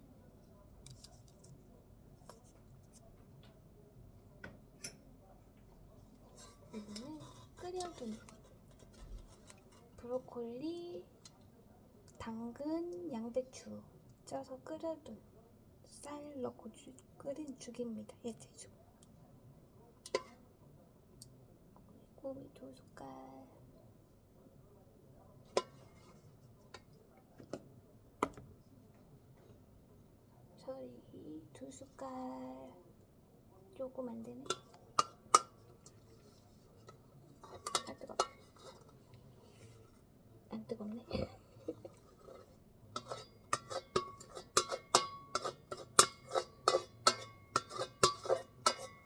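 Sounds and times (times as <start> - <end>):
spoon clinking against bowl: 34.4 - 36.1, 37.4 - 38.9, 43.0 - 49.0.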